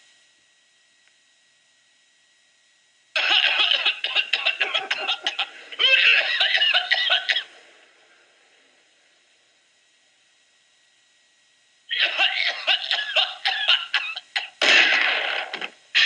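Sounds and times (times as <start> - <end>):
laughter in short bursts: 3.2 - 7.5, 11.9 - 14.6.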